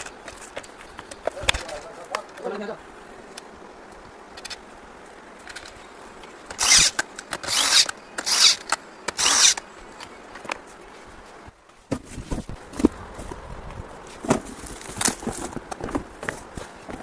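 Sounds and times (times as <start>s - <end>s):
power tool bursts: 6.5s - 9.6s.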